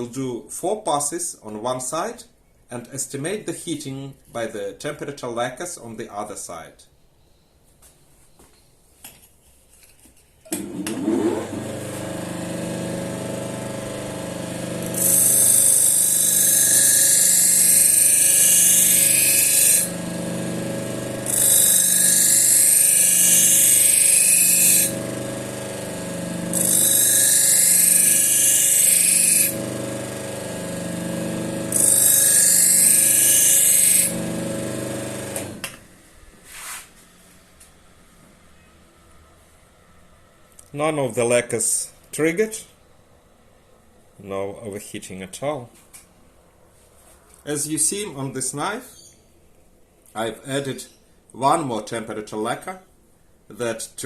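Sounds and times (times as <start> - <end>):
motor-driven wheel humming: 10.5 - 36.0.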